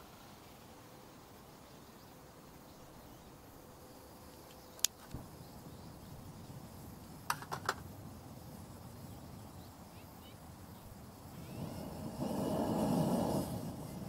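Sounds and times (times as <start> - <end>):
low steady background: 0.0 - 14.0
sharp clicks: 4.4 - 5.2.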